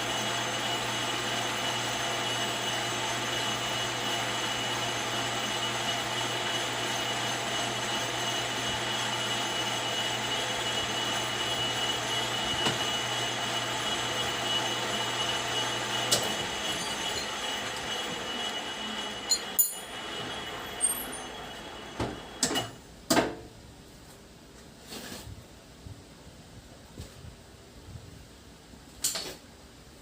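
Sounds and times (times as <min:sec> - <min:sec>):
metal lathe whining: 0:00.0 - 0:22.6.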